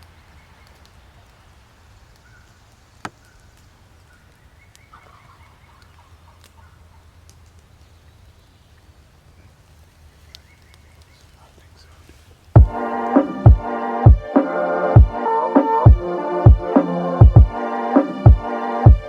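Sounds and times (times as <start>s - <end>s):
wild turkey gobbling: 2.2s - 7.3s.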